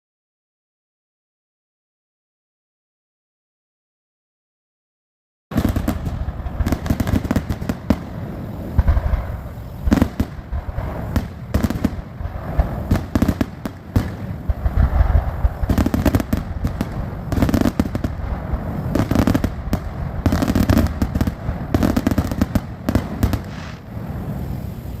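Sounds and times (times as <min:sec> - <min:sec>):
deep fireworks booms: 0:05.5 - 0:25.0
fireworks bangs and crackling: 0:05.5 - 0:25.0.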